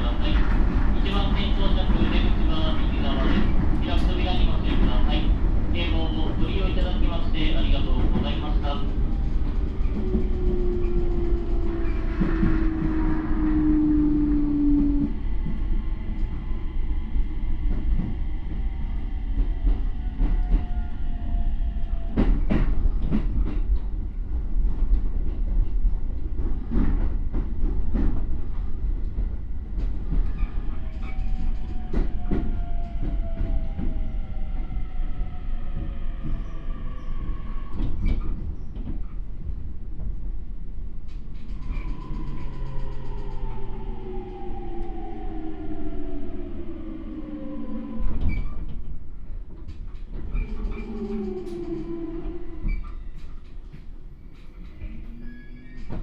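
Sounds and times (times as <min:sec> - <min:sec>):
train wheel rumble: 0:00.0 - 0:56.0.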